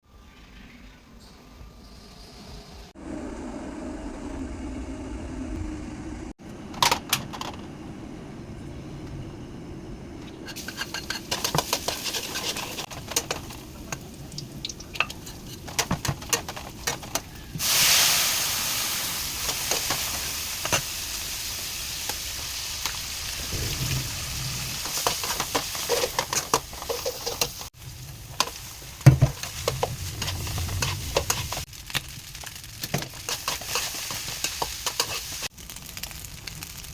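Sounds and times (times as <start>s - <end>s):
stirring clicks and scrapes: 10.5s - 14.1s, 14.9s - 17.3s, 24.8s - 27.7s, 29.2s - 32.1s, 32.8s - 35.5s
rice sizzling in a hot pan: 17.6s - 36.9s.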